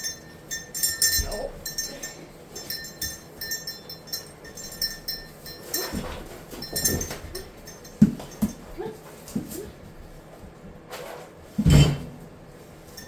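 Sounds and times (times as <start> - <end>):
light metallic clinking: 0.0 - 8.8.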